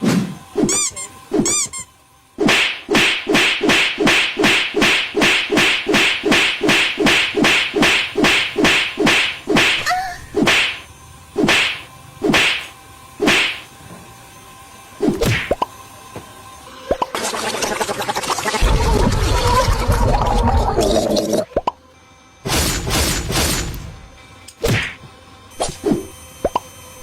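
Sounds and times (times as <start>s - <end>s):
whip-like swishes: 2.4s - 10.8s, 11.4s - 13.6s.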